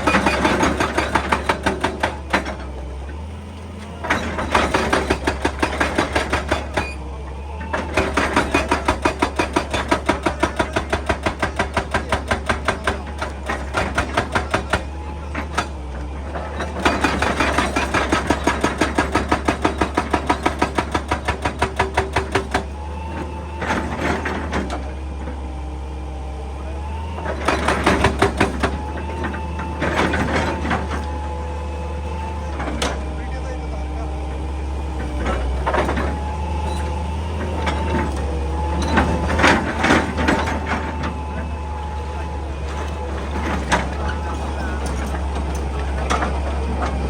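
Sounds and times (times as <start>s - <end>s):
hydraulic breaker hammering rock: 0.0s - 2.8s, 3.8s - 25.6s, 26.8s - 47.0s
excavator engine hum: 0.0s - 47.0s.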